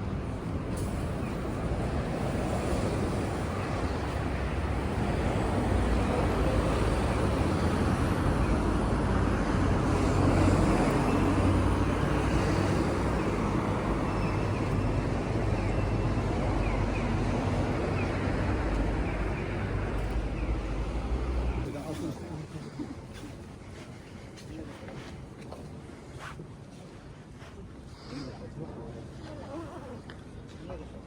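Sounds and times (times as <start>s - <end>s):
even rushing wash: 0.0s - 21.5s.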